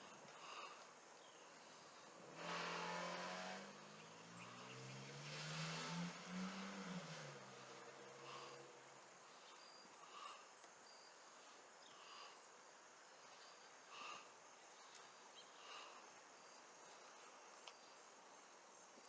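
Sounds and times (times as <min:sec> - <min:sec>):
quiet hiss: 0:00.0 - 0:19.0
passing vehicle engine: 0:01.9 - 0:09.5.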